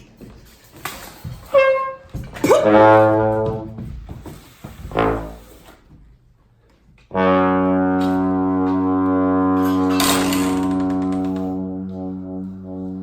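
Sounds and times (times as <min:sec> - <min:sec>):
trombone playing low notes: 0:01.6 - 0:04.0, 0:04.8 - 0:05.8, 0:07.1 - 0:13.0.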